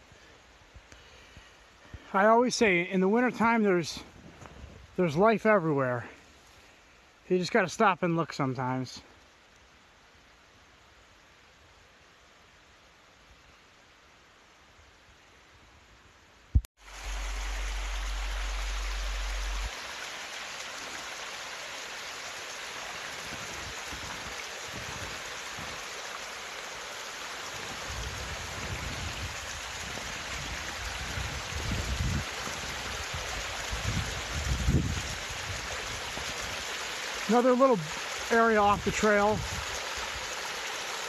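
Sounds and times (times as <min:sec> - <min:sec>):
creek running: 0:00.0 - 0:09.8, 0:16.6 - 0:41.0
low rumbles: 0:16.9 - 0:19.8.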